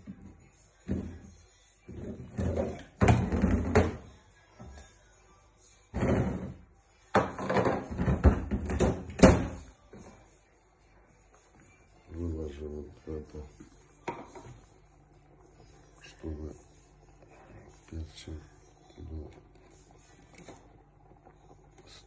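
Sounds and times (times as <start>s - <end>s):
kitchenware clattering: 6.0s - 9.6s.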